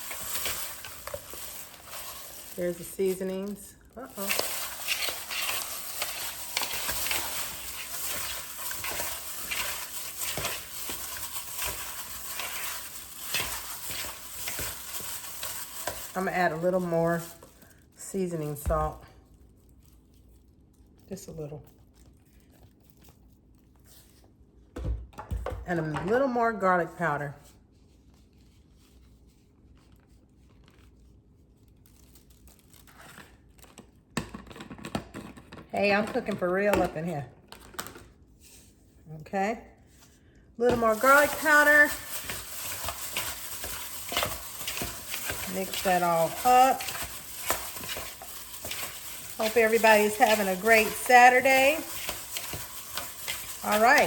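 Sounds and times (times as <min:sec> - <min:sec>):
gloved hands crinkling: 0:00.0 - 0:18.0, 0:40.7 - 0:54.0.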